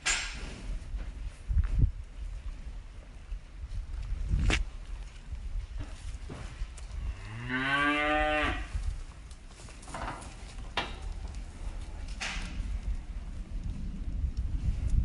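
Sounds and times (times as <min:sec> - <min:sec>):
cow mooing: 0:07.2 - 0:08.7
low rumble: 0:10.7 - 0:15.0.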